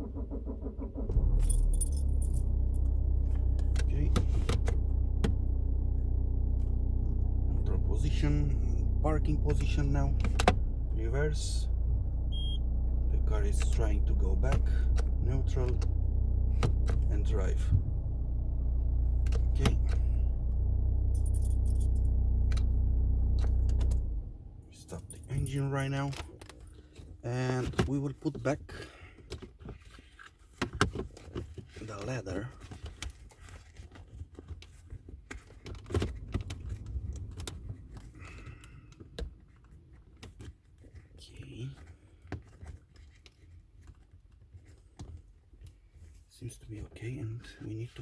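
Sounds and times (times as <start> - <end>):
car engine idling: 0.0 - 25.7, 35.9 - 39.0
keys jingling: 1.4 - 2.9, 21.1 - 22.0.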